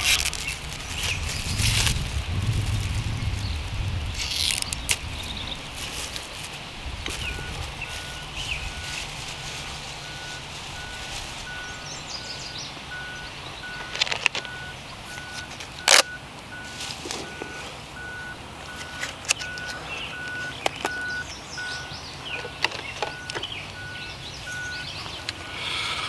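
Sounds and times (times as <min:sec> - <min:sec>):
vehicle reversing alarm beeping: 0:07.1 - 0:26.0.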